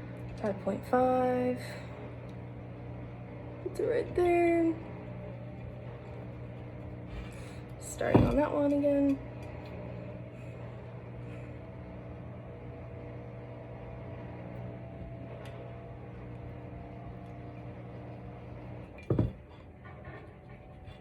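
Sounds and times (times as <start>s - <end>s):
low mechanical hum: 0.0s - 21.0s
loud knock: 19.0s - 19.4s.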